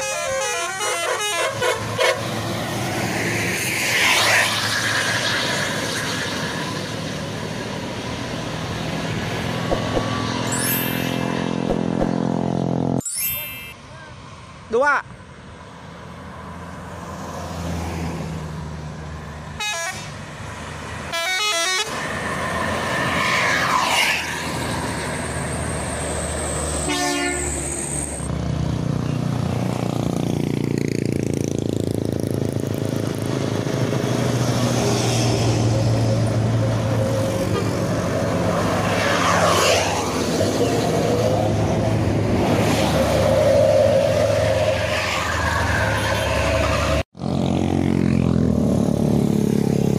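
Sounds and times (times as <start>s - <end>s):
bus horns pulsing: 0.0s - 2.4s, 19.6s - 20.2s, 21.1s - 22.0s, 26.8s - 27.9s
vehicles sweeping past: 0.0s - 49.9s.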